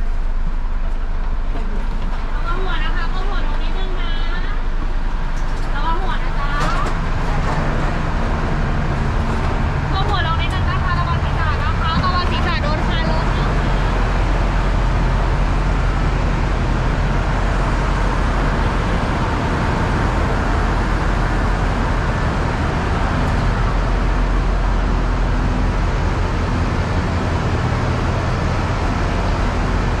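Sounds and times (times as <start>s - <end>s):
diesel train rumble and hum: 0.0s - 30.0s.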